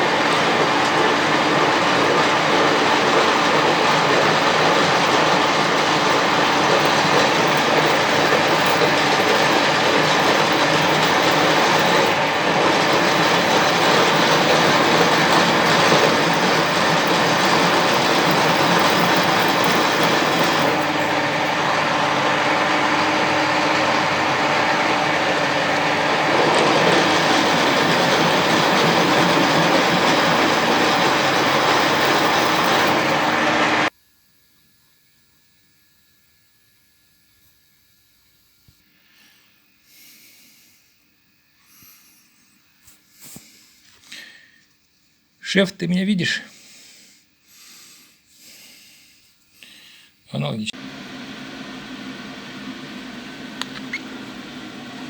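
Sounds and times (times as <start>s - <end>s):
machine humming: 0.0s - 33.9s, 50.8s - 55.0s.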